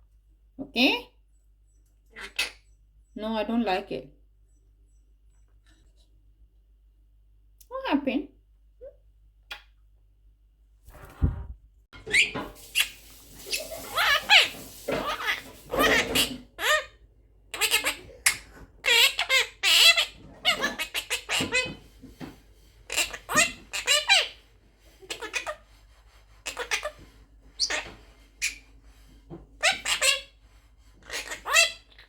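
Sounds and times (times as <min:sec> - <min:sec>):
parrot chattering and squawking: 0:02.0 - 0:02.8, 0:12.0 - 0:21.9, 0:22.9 - 0:28.7, 0:29.6 - 0:30.4, 0:31.0 - 0:32.0.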